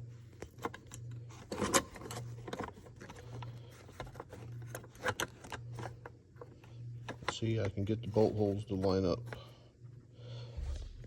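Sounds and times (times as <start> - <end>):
low hum: 9.2 - 11.0.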